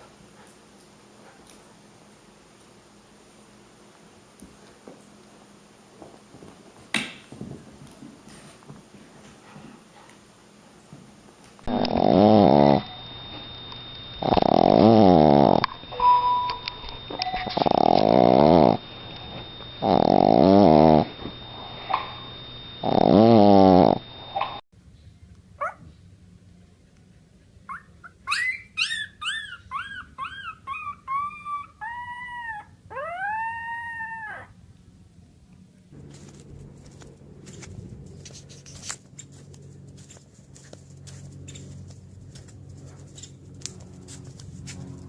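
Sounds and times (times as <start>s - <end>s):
howling yips: 27.7s - 34.6s
dogs howling: 28.3s - 34.6s.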